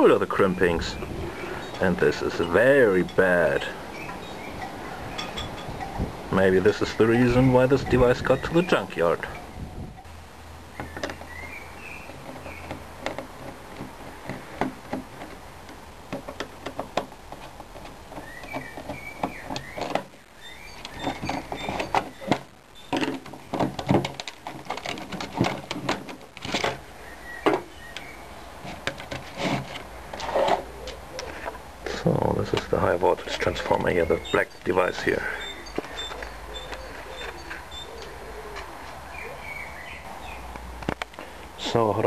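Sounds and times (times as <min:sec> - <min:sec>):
plastic parts clicking and knocking: 0:10.8 - 0:11.4, 0:12.0 - 0:31.6.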